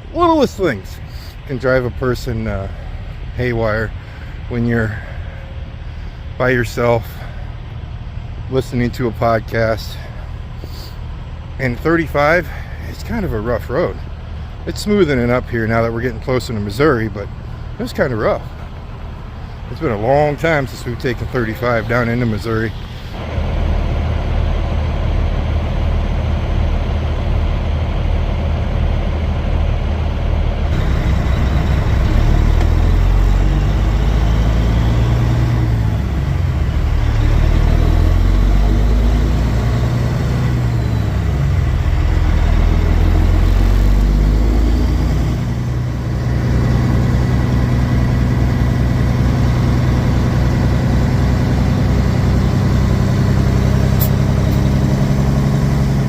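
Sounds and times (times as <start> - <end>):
road noise inside cab: 0.0 - 56.0
truck diesel engine: 0.0 - 56.0.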